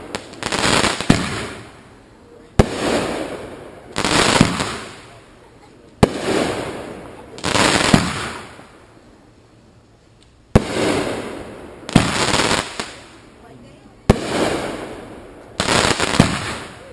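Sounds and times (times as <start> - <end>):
firework bang: 0.0 - 1.8, 2.6 - 5.2, 6.0 - 8.6, 10.5 - 13.2, 14.1 - 16.9.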